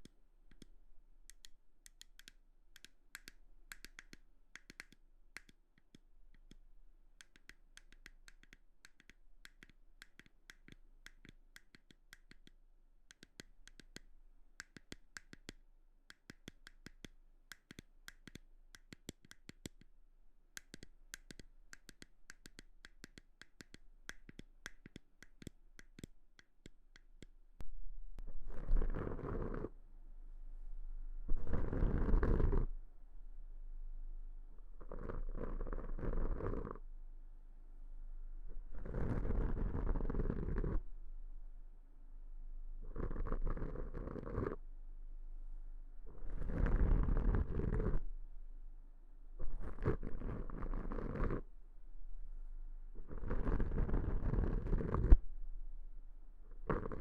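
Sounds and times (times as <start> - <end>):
scratchy rubbing: 28.4 - 29.8, 31.3 - 32.7, 34.8 - 36.8, 38.6 - 40.8, 42.8 - 44.6, 46.1 - 48.0, 49.4 - 51.5, 53.0 - 55.2, 56.6 - 57.0.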